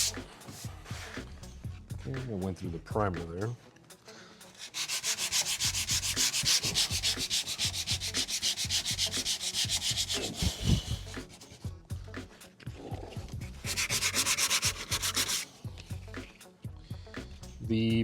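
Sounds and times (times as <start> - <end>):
sandpaper sanding car panel: 0.0 - 0.7, 4.5 - 11.6, 13.6 - 15.5.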